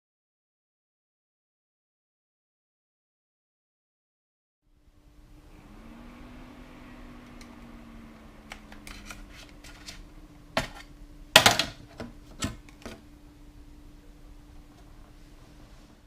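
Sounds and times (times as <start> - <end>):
low hum: 4.6 - 16.0.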